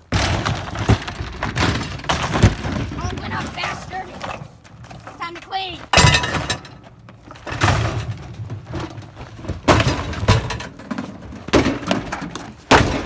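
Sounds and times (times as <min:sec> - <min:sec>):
panels cracking and breaking: 0:05.9 - 0:13.0.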